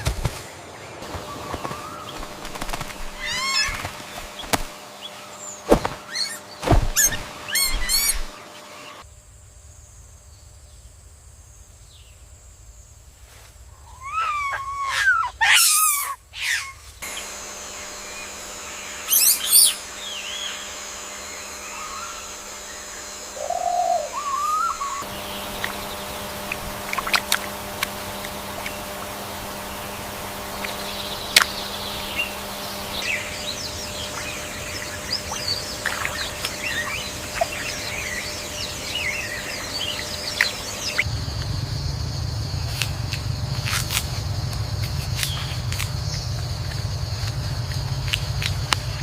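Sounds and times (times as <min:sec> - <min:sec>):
birds chirping: 0:00.0 - 0:09.0, 0:13.8 - 0:43.6, 0:44.2 - 0:49.0.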